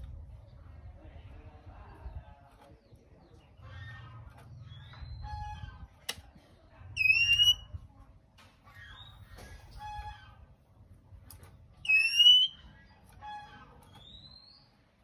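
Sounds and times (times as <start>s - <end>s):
loud whistled bird note: 7.0s - 7.7s, 11.9s - 12.6s
magpie-robin chattering: 11.8s - 12.6s.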